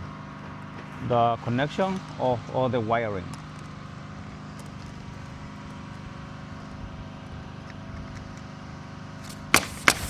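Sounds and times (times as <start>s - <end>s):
low mechanical hum: 0.0s - 10.0s.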